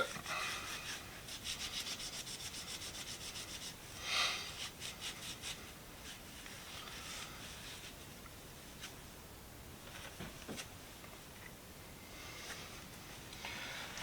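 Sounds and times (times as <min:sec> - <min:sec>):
wiping strokes on metal wrench: 0:00.4 - 0:03.8.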